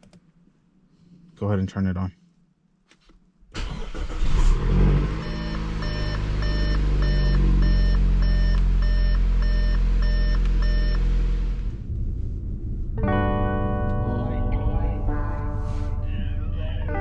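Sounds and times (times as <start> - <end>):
car engine fast idle: 3.6 - 7.5
dashboard warning chime beeping: 5.2 - 11.1.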